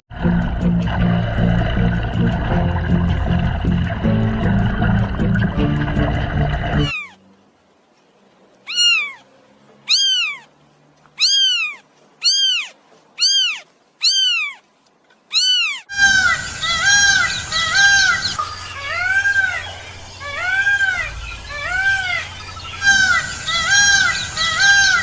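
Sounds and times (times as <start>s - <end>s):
cat meowing: 6.8s - 7.2s, 8.6s - 10.5s, 11.2s - 14.6s, 15.3s - 15.9s
background noise: 6.9s - 25.0s.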